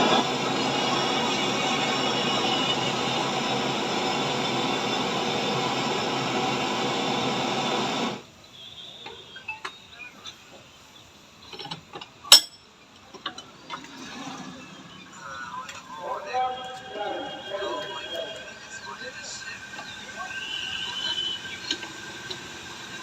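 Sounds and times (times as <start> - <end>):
hand tools clinking on metal: 11.5 - 13.5
dense steady noise: 14.6 - 23.0.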